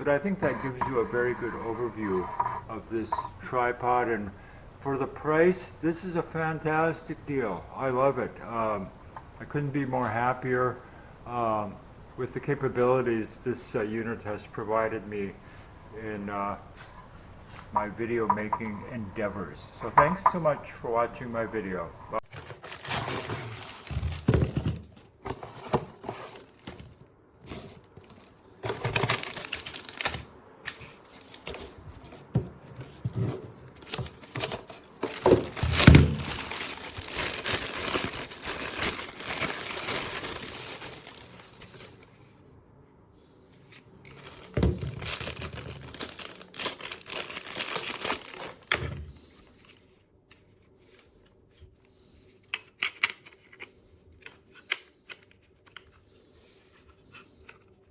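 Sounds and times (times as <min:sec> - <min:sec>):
rustling and crinkling handling noise: 0:00.0 - 0:03.5, 0:21.2 - 0:42.4, 0:43.5 - 0:57.9.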